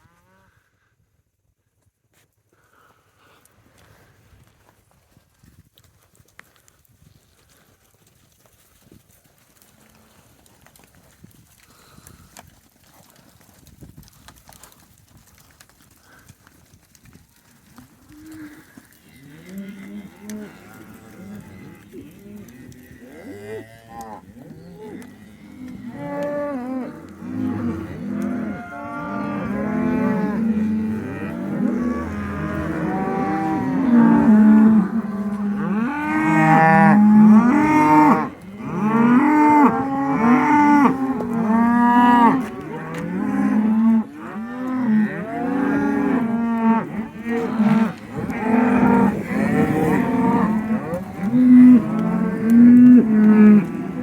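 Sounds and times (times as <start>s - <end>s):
cattle mooing: 19.2s - 54.0s.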